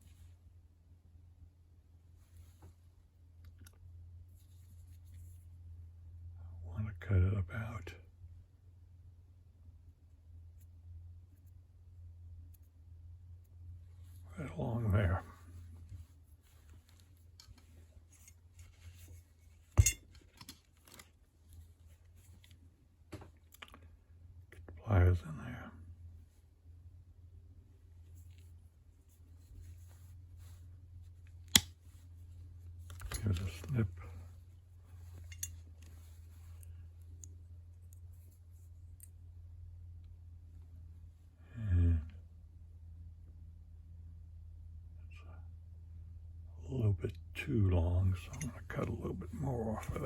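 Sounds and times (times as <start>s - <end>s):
low hum: 0.0s - 50.0s
metallic clink of hand tools: 19.8s - 20.5s, 35.2s - 35.6s, 48.3s - 48.5s.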